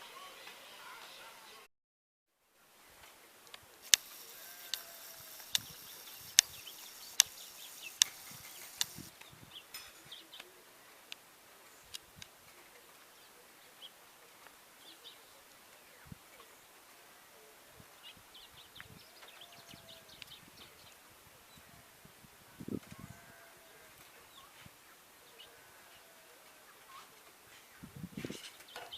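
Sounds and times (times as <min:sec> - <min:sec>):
small birds chirping: 0:02.6 - 0:22.0, 0:22.6 - 0:28.9
sharp clicks: 0:03.4 - 0:09.3
high hiss: 0:03.7 - 0:09.4.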